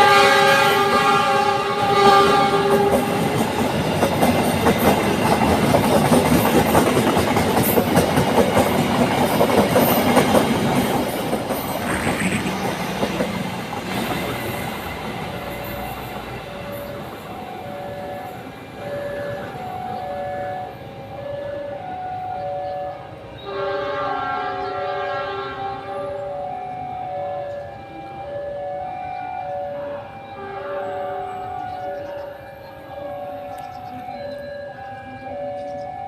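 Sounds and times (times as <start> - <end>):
train wheels clattering on rails: 1.9 - 18.5.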